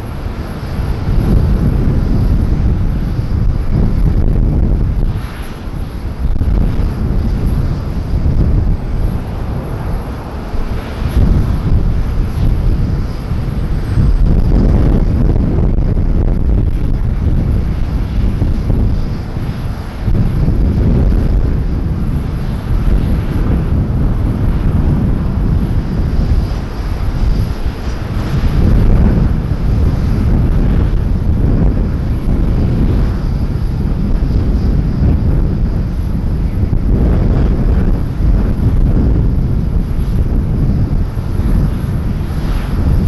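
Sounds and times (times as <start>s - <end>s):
airliner engines rumbling: 0.0s - 43.0s.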